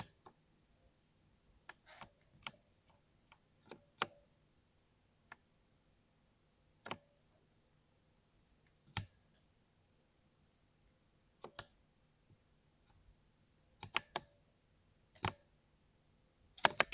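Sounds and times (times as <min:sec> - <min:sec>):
mechanical keyboard key clicks: 0:16.6 - 0:16.9.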